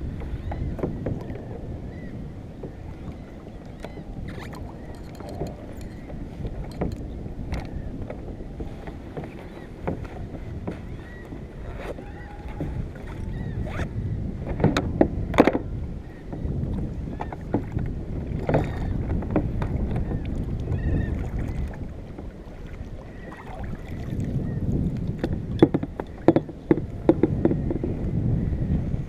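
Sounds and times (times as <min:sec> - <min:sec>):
wind and water rumble: 0:00.0 - 0:29.0.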